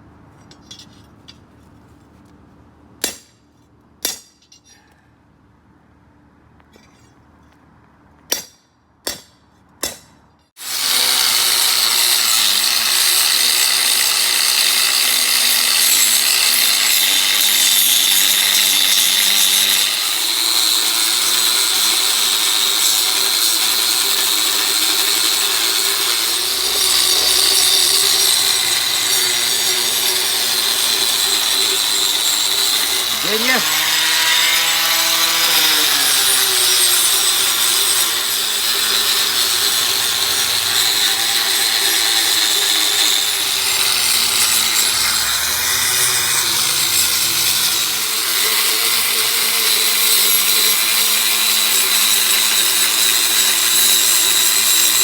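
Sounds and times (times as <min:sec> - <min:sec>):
sharp metallic knocks: 0:08.3 - 0:10.2
angle grinder grinding steel: 0:10.6 - 0:55.0.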